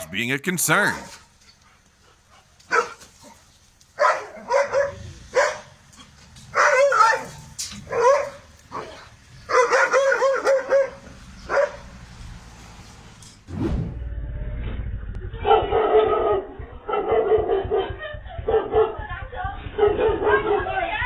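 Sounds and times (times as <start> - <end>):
dog barking: 2.7 - 3.0, 4.0 - 5.8, 6.5 - 11.8, 15.5 - 19.0, 19.8 - 20.8.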